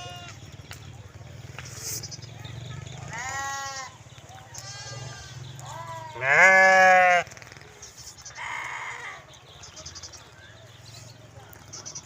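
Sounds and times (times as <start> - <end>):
sheep bleating: 0.0 - 0.4, 3.1 - 7.4, 8.4 - 9.3.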